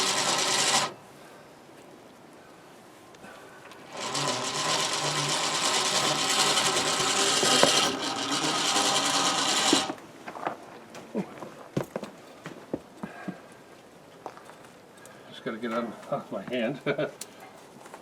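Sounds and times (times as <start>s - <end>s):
electric winch motor whirring: 0.0s - 1.0s, 3.8s - 10.0s.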